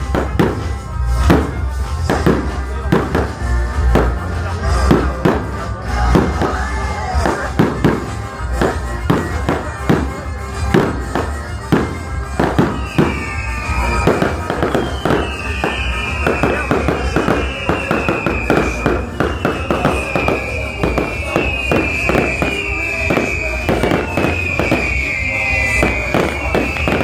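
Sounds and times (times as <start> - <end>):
background music: 0.0 - 27.0
fireworks bangs: 0.0 - 27.0
high falling whistles: 11.8 - 27.0.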